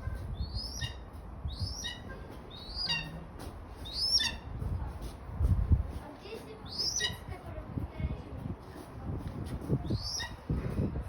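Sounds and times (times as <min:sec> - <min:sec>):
bird of prey calling: 0:00.4 - 0:03.2, 0:03.8 - 0:04.4, 0:06.7 - 0:07.2, 0:10.0 - 0:10.4.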